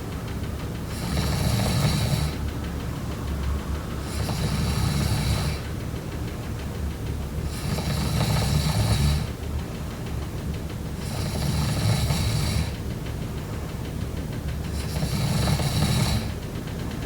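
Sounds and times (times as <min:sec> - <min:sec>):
quiet breathing: 0:00.8 - 0:05.8, 0:07.4 - 0:09.4, 0:11.0 - 0:12.8, 0:14.7 - 0:16.4
person snoring: 0:00.9 - 0:02.4, 0:04.0 - 0:05.7, 0:07.5 - 0:09.3, 0:11.0 - 0:12.8, 0:14.8 - 0:16.4.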